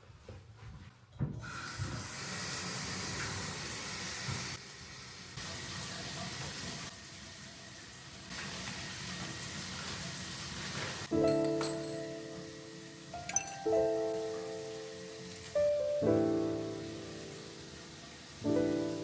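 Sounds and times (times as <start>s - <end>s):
water running: 5.4s - 19.0s.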